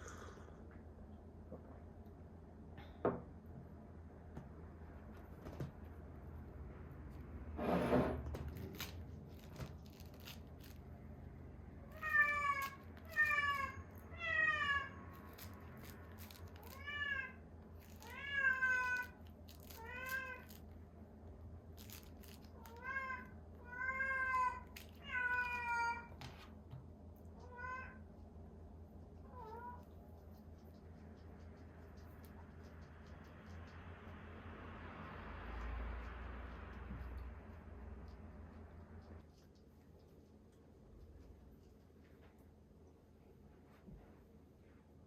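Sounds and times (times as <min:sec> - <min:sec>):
cat meowing: 0:11.8 - 0:15.3, 0:16.6 - 0:20.6, 0:22.6 - 0:26.2, 0:27.4 - 0:28.0, 0:29.3 - 0:29.9.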